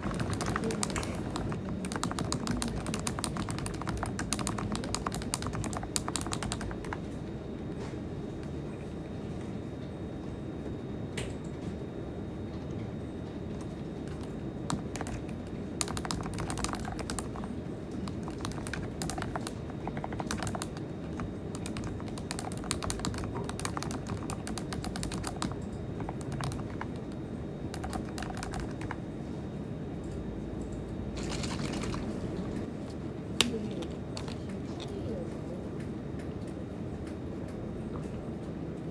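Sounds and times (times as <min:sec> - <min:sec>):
keyboard typing: 0:00.0 - 0:07.3, 0:13.5 - 0:29.0, 0:31.2 - 0:35.4
low background hum: 0:00.0 - 0:38.9.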